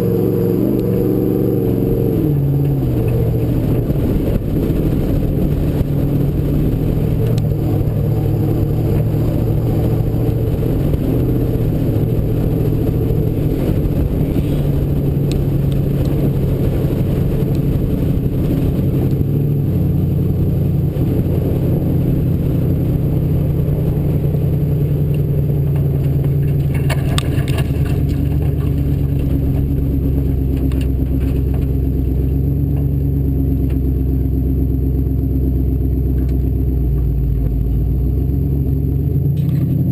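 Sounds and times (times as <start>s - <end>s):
truck engine running under load: 0.0s - 39.9s
short rattle: 25.1s - 32.0s.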